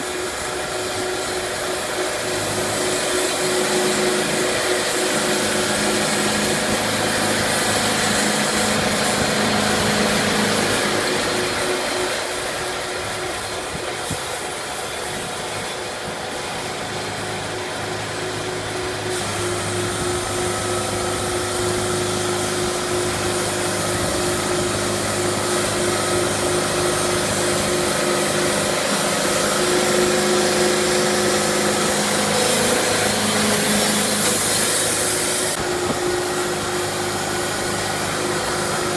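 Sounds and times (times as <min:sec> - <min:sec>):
sawmill machinery droning: 0:00.0 - 0:38.9.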